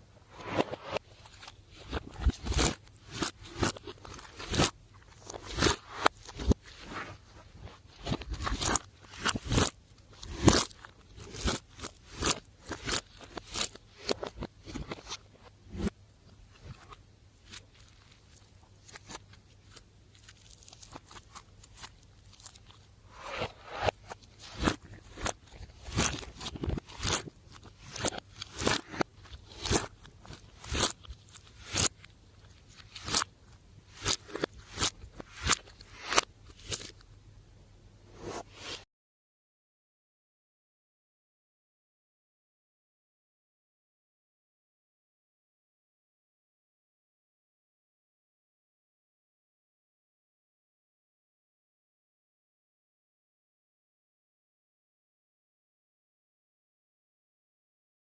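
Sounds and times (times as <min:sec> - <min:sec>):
slime popping and crackling: 0:01.8 - 0:06.6, 0:08.0 - 0:14.4, 0:24.4 - 0:32.1.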